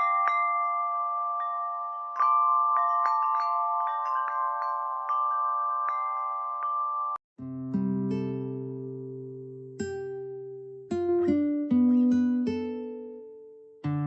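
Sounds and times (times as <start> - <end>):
chimes ringing: 0.0 - 7.2.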